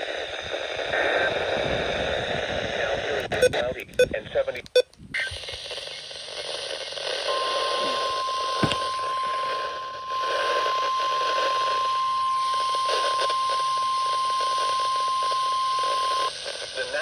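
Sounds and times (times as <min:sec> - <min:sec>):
radio static: 0:00.0 - 0:10.6, 0:15.8 - 0:17.0
steady warning beep: 0:03.4 - 0:04.9.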